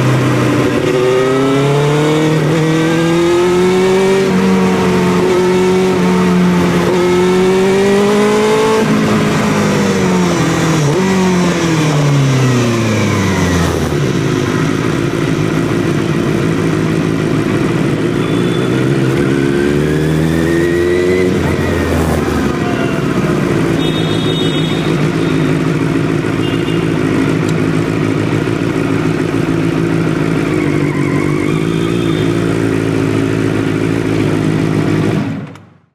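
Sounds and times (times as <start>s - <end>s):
motorcycle engine revving: 0.0s - 35.9s
short high beeps: 18.2s - 18.9s.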